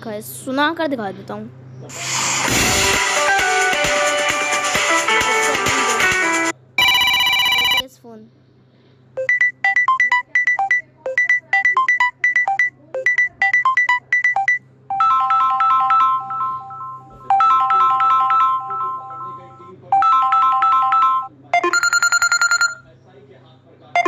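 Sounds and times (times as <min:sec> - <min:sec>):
phone ringtone melody: 0:06.8 - 0:07.8, 0:09.2 - 0:22.8.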